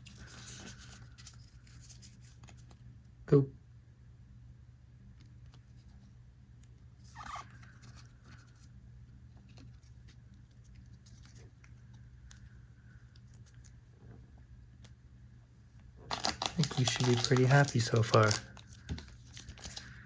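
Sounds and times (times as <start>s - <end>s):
low steady hum: 0.0s - 20.0s
card handling clicks: 16.1s - 20.0s.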